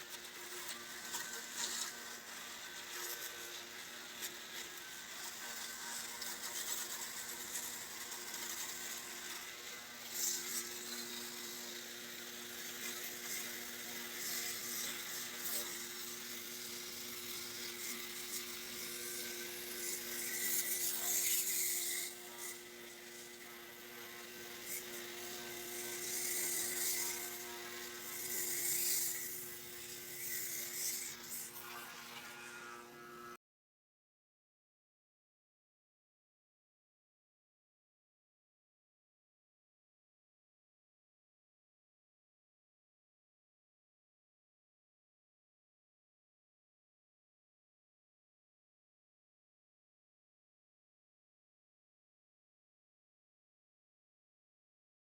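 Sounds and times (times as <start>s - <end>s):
small electric motor humming: 0.0s - 33.4s.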